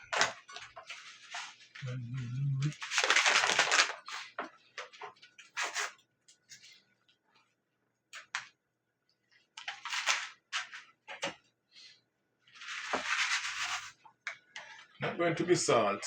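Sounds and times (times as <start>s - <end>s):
kitchen rustling and scraping: 0.1s - 1.8s, 2.8s - 7.5s, 9.4s - 15.0s.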